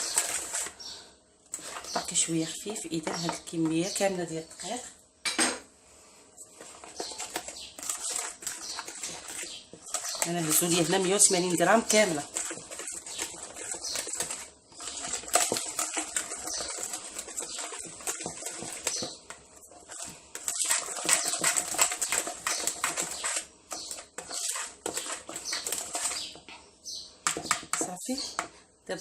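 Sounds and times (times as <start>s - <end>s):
utensil scraping batter bowl: 0.0s - 4.9s, 6.3s - 28.6s.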